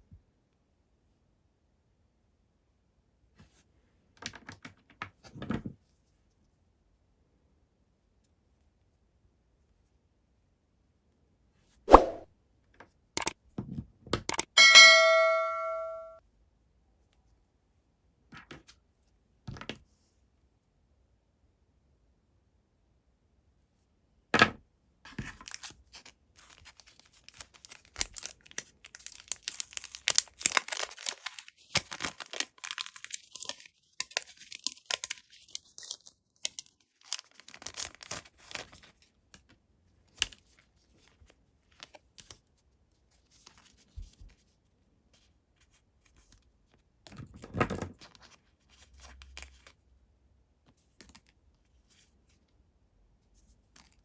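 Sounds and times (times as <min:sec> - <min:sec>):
packaging being torn open: 0:25.4 - 0:38.9.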